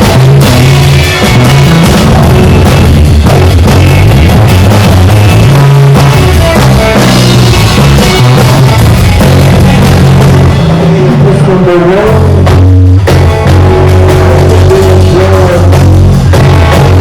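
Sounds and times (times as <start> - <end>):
bass guitar: 0.0 - 17.0
distorted guitar: 0.0 - 17.0
drum kit: 0.0 - 17.0.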